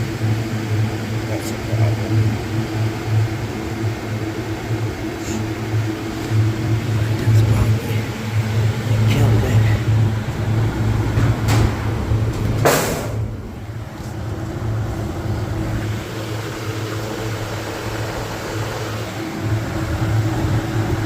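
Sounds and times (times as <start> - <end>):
condensing unit humming: 0.0 - 21.0.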